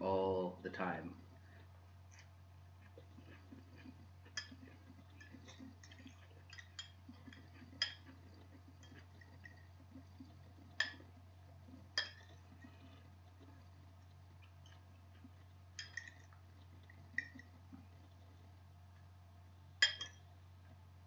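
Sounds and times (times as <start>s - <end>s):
chewing: 1.1s - 19.2s
utensil clinking on a dish: 4.3s - 8.1s, 11.9s - 12.5s, 15.8s - 16.4s, 19.8s - 20.3s.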